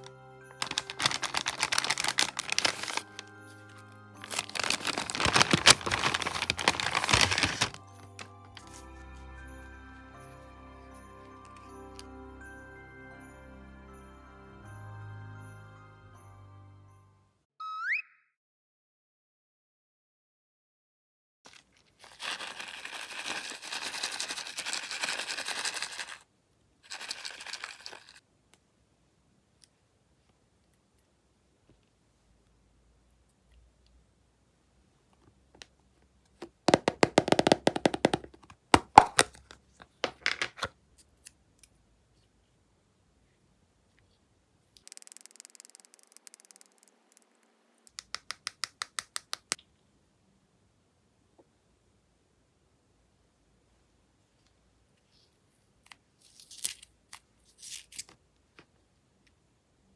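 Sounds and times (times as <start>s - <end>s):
packaging crinkling and tearing: 0.0s - 8.8s, 21.5s - 26.2s
slime crackling and popping: 0.6s - 3.2s, 4.2s - 7.8s.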